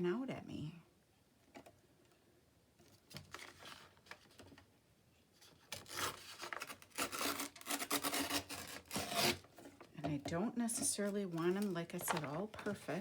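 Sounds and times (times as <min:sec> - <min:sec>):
paper rustling and crinkling: 0:02.8 - 0:04.7, 0:05.4 - 0:09.9, 0:10.7 - 0:13.0.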